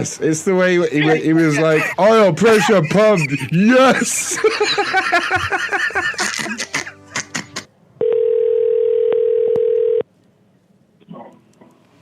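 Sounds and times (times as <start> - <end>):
men laughing and talking: 0.0 - 7.5
telephone dial tone: 8.0 - 10.0
telephone line clicks: 8.1 - 10.0.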